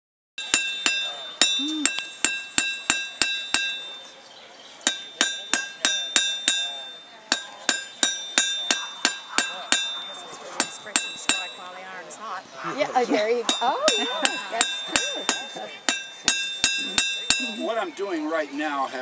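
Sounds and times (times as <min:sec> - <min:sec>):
hammer striking iron on anvil: 0:00.4 - 0:04.0, 0:04.9 - 0:11.7, 0:13.5 - 0:17.6.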